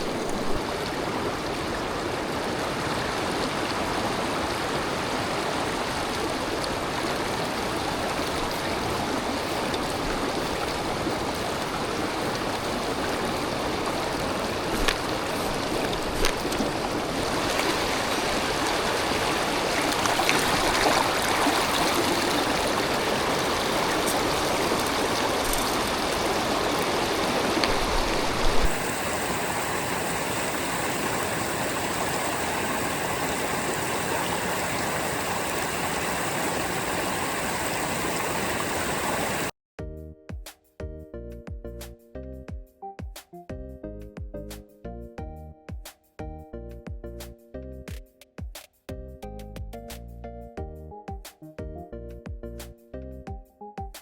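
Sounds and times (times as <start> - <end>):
stream running: 0.0 - 39.5.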